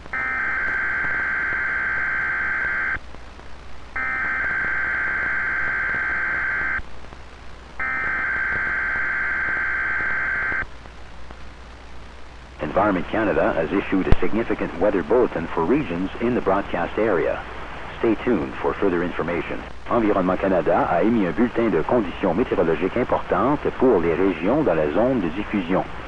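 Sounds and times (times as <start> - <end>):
buzzing warbling data tones: 4.0 - 6.8.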